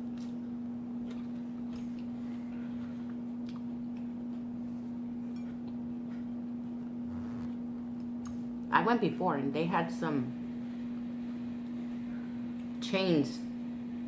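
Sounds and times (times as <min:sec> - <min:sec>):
steady low hum: 0:03.8 - 0:12.8.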